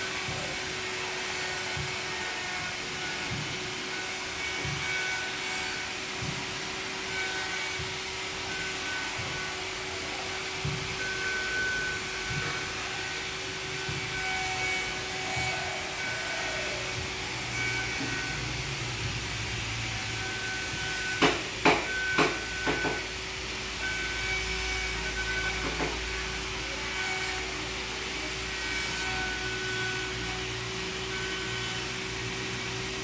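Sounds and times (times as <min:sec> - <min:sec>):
whirring hiss: 0:00.0 - 0:33.0
sharp knocks: 0:21.2 - 0:23.0.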